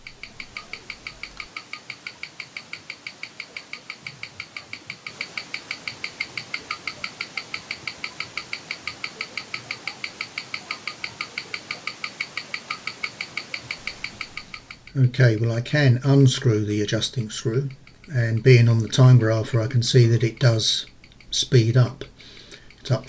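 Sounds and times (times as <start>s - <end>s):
watch movement ticking: 0.0s - 23.0s.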